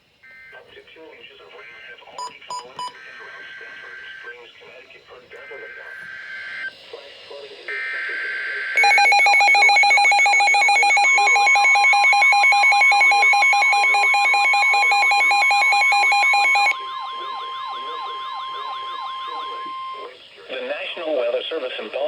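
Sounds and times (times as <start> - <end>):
steady alarm tone: 5.4 - 6.8, 7.7 - 21.3
pulsing electronic alarm tone: 7.7 - 20.1.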